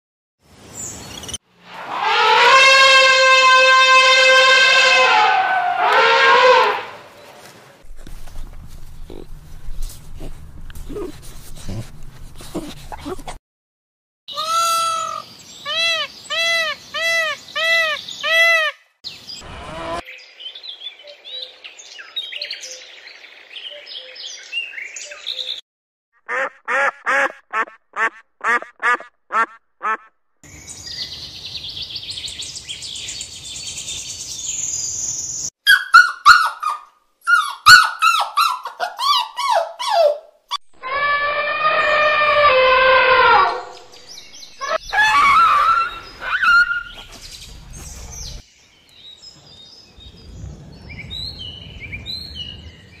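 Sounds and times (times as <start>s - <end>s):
bird-like animal calls: 8.9s - 9.4s, 14.3s - 18.8s, 44.6s - 47.2s.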